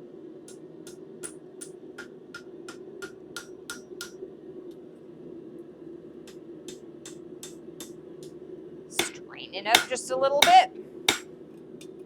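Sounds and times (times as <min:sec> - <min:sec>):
steady hum: 0:00.0 - 0:12.0
hammer striking steel on anvil: 0:00.5 - 0:04.2, 0:06.3 - 0:08.0, 0:09.0 - 0:11.3.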